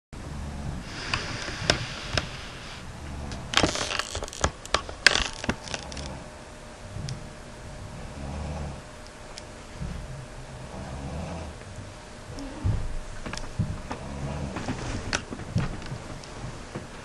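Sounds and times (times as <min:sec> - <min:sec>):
sharp clicks and scrapes: 0:03.3 - 0:06.2
woman snoring: 0:07.9 - 0:08.9, 0:10.0 - 0:11.6, 0:12.3 - 0:12.8, 0:13.9 - 0:14.7.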